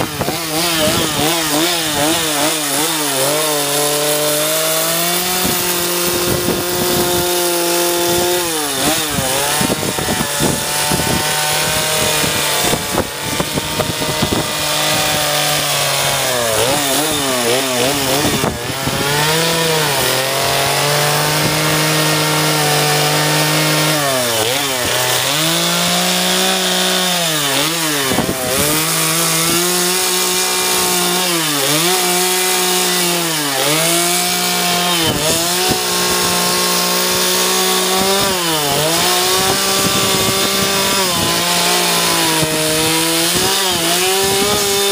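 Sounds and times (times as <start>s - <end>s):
chainsaw cutting wood: 0.0s - 44.9s.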